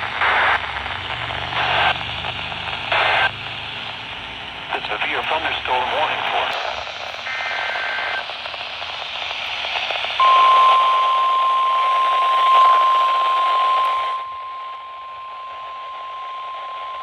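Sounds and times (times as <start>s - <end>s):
static hiss: 0.0s - 11.2s
loud steady warning alarm tone: 10.2s - 17.0s.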